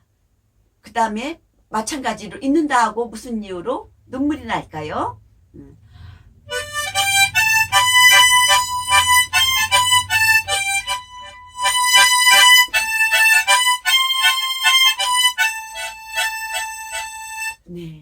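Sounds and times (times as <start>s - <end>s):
harmonica playing slow melody: 6.0s - 17.7s.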